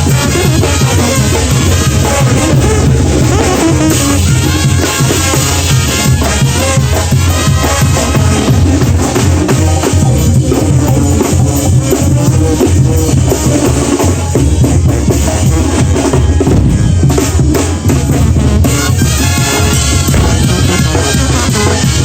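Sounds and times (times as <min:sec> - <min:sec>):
brass bands playing: 0:00.0 - 0:22.0
loud steady drum beat: 0:00.0 - 0:22.0.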